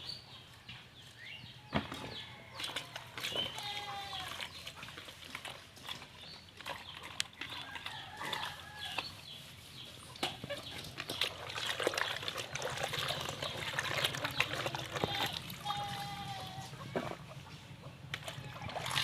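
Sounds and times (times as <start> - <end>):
chickens clucking: 6.8 - 19.0.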